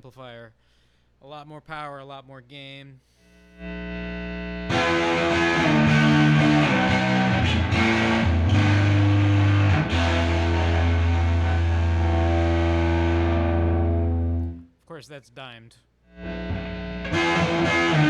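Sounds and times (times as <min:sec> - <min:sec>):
distorted electric guitar: 0:03.5 - 0:14.6, 0:16.1 - 0:18.0.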